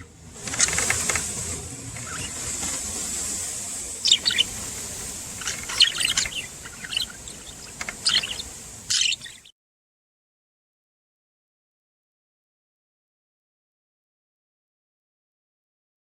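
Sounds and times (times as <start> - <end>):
steady high hiss: 0.0 - 9.5
budgerigars twittering: 2.0 - 2.6, 4.0 - 9.5.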